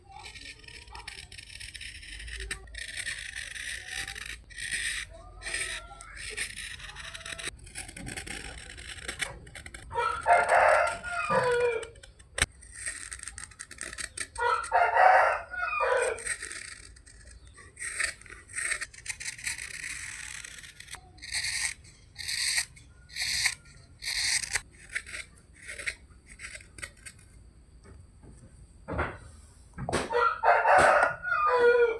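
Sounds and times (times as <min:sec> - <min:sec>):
knife scraping wood: 0:00.0 - 0:27.4
rooster crowing: 0:09.9 - 0:11.9, 0:14.4 - 0:16.2, 0:30.1 - 0:31.9.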